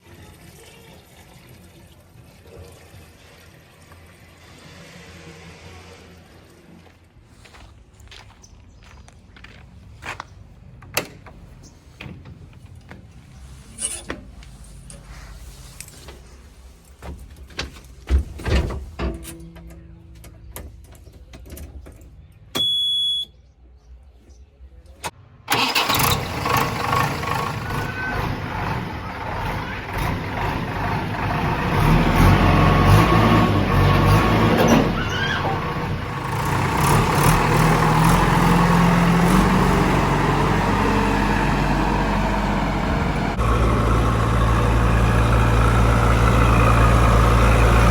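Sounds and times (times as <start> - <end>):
diesel engine running: 25.5 - 47.9.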